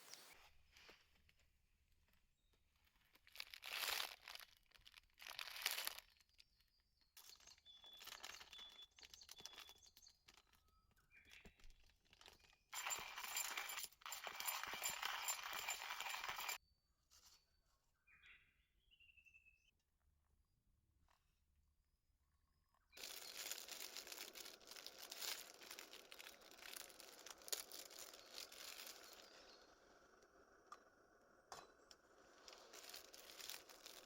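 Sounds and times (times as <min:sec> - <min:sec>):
plastic rustling and crinkling: 0:00.0 - 0:13.0, 0:23.0 - 0:29.6, 0:32.3 - 0:34.0.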